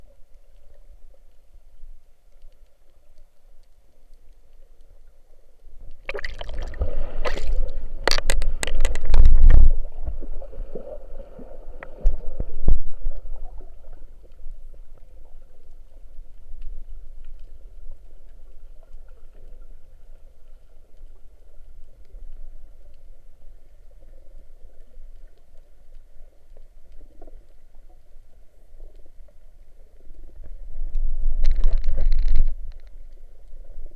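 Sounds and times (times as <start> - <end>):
bubbling gurgling water: 6.0 - 14.2.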